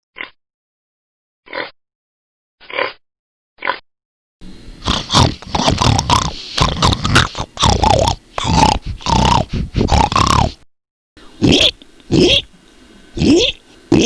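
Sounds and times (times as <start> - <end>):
pig grunting: 4.8 - 10.6, 11.4 - 12.5, 13.2 - 14.0.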